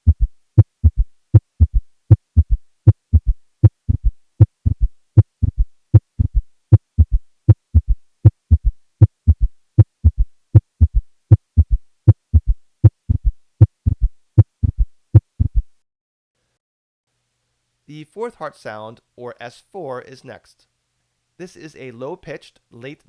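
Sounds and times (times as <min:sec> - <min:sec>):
heartbeat thuds: 0:00.0 - 0:15.8.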